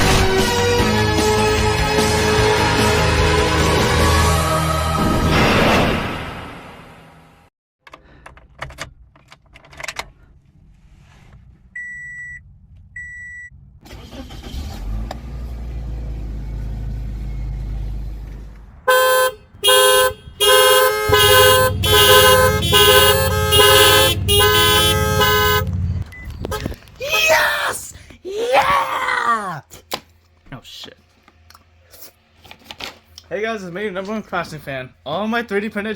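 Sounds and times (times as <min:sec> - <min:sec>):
car horn honking: 0:18.9 - 0:26.8
low rumble: 0:21.0 - 0:26.7.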